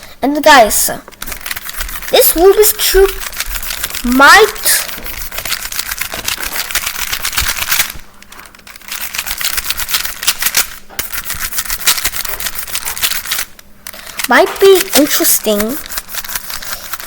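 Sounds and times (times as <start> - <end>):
puzzle cube clicking: 8.7 - 17.0.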